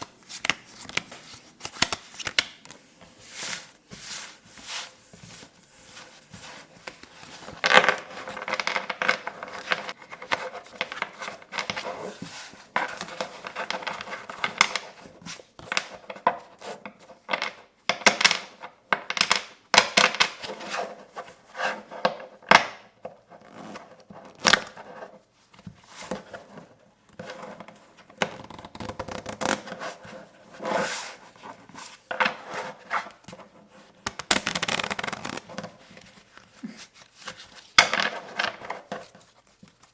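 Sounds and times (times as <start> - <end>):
playing cards shuffled and flicked: 34.1 - 35.7.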